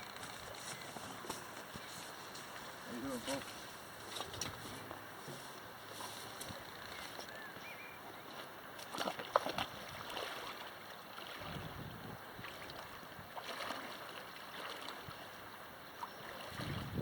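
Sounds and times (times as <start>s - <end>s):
river water rushing: 5.0s - 17.0s
sharp knocks or splashes: 8.8s - 11.7s
wind on microphone: 11.4s - 13.4s, 16.4s - 17.0s.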